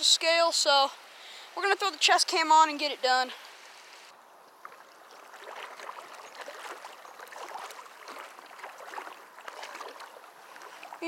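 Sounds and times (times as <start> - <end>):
water sloshing around wading legs: 4.4 - 11.0.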